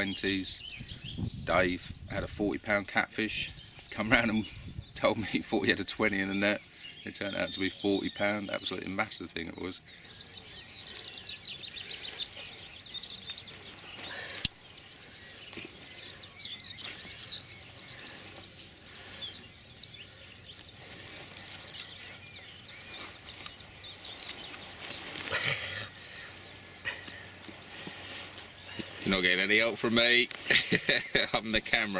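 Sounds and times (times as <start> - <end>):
small birds chirping and trilling: 0.0 - 31.9
rustling noise: 20.6 - 30.9.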